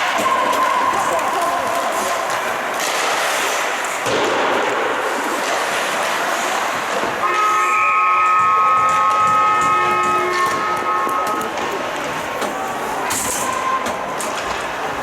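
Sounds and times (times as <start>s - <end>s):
ice rink horn: 7.2s - 12.1s.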